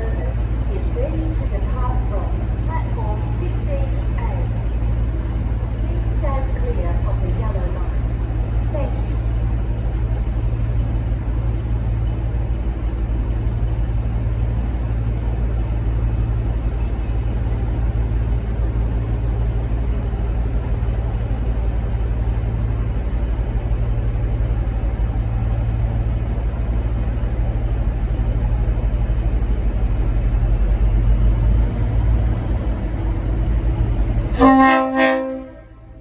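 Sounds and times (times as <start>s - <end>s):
locomotive low rumble: 0.0s - 36.0s
train air horn chord: 34.4s - 36.0s.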